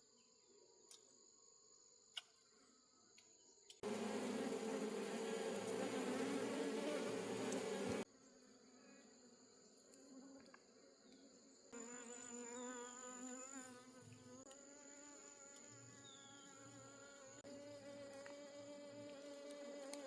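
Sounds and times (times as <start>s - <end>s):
honey bees buzzing: 3.8s - 8.1s, 11.8s - 20.0s.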